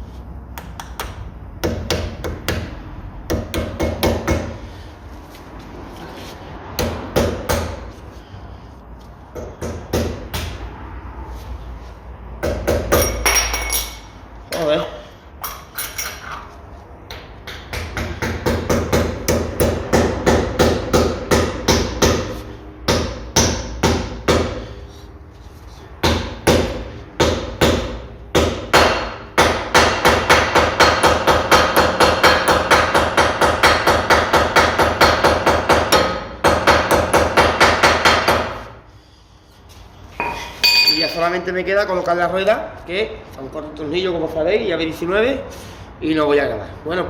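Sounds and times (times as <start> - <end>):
hammer blows on metal ringing: 40.2 - 41.3.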